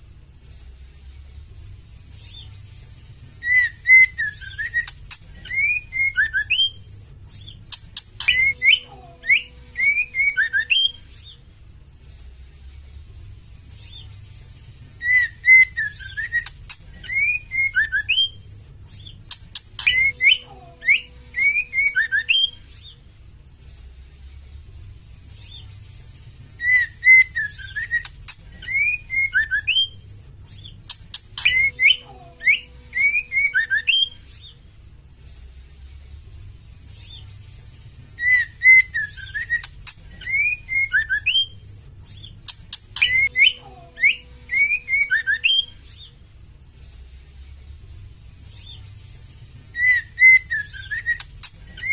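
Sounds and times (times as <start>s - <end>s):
bird calling with whistles and chirps: 2.2s - 11.4s, 13.8s - 23.0s, 25.4s - 34.6s, 37.0s - 46.2s, 48.5s - 51.9s.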